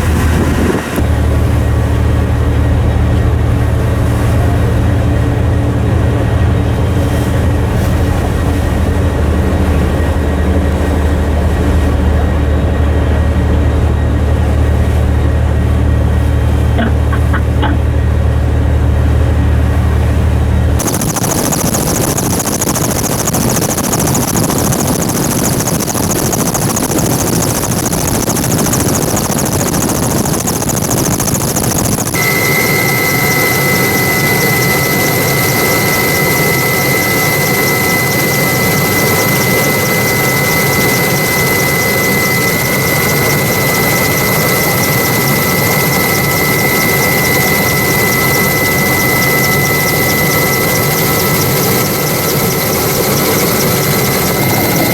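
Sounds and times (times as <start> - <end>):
turbine engine noise: 0.0 - 54.9
high whine: 20.8 - 54.9.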